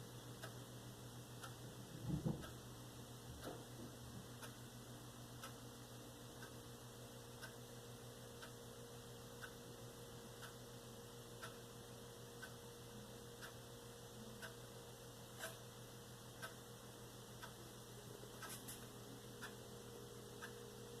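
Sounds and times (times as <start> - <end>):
faint clock ticking: 0.0 - 21.0
low electrical hum: 0.0 - 21.0.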